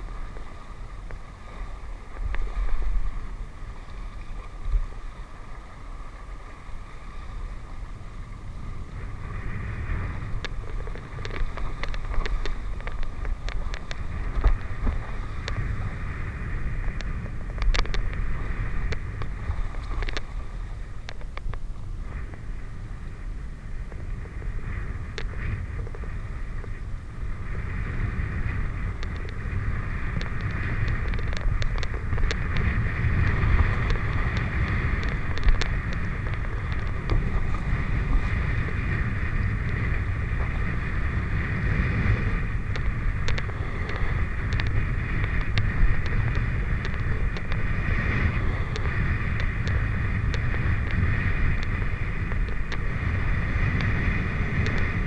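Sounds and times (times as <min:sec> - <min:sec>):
wind buffeting microphone: 0:00.0 - 0:55.0
steady low rumble: 0:07.0 - 0:55.0
sharp clicks: 0:30.1 - 0:37.5.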